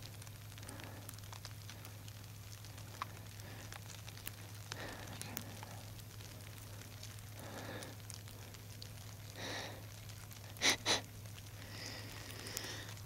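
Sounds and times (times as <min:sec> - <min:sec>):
light ticks: 0:00.0 - 0:09.2
low steady hum: 0:00.0 - 0:13.0.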